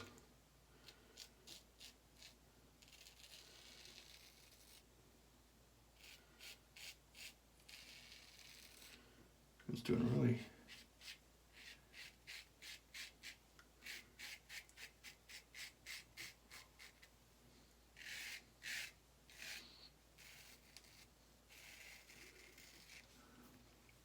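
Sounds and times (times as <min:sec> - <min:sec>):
faint steady hiss: 0:00.0 - 0:24.0
razor scraping stubble: 0:00.8 - 0:04.8, 0:06.0 - 0:09.0, 0:09.9 - 0:17.1, 0:18.0 - 0:23.2.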